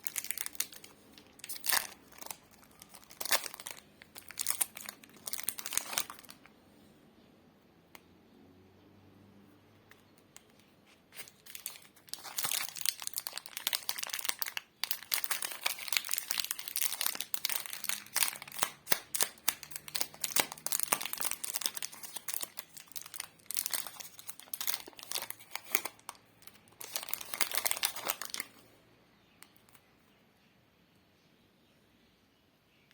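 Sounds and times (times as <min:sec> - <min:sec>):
plastic wrapper crinkling: 0:00.0 - 0:06.5, 0:10.3 - 0:28.7.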